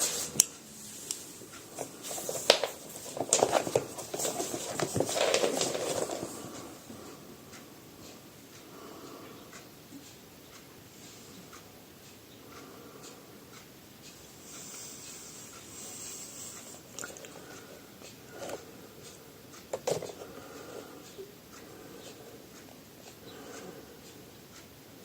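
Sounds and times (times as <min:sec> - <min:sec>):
low hiss: 0:00.0 - 0:25.0
small handling clicks and knocks: 0:19.7 - 0:20.2.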